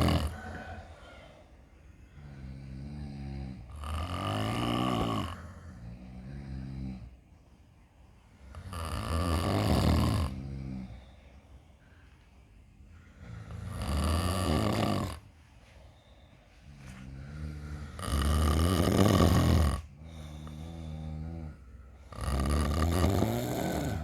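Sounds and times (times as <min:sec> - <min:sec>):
person snoring: 0:00.0 - 0:01.2, 0:02.2 - 0:07.2, 0:08.5 - 0:11.2, 0:13.1 - 0:15.3, 0:16.7 - 0:24.0
quiet breath with tone: 0:00.0 - 0:03.9, 0:10.0 - 0:19.0, 0:19.8 - 0:24.0.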